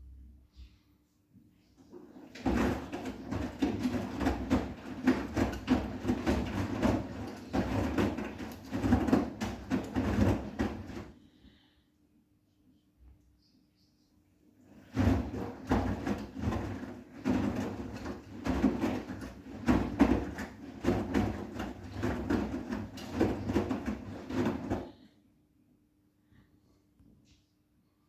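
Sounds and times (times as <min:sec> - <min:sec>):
washing machine drum thudding: 0:02.2 - 0:11.1, 0:14.9 - 0:24.9.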